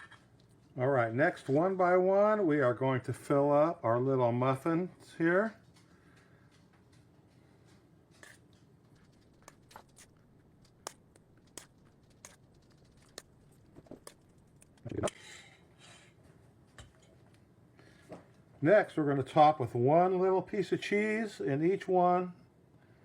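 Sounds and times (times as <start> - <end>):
spoon scraping: 8.1 - 16.2.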